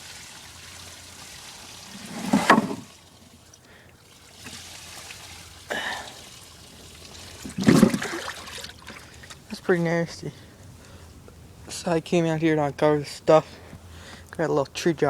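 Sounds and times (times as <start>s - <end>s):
rainwater pouring and trickling: 0.0s - 9.6s
water splash: 7.3s - 8.9s.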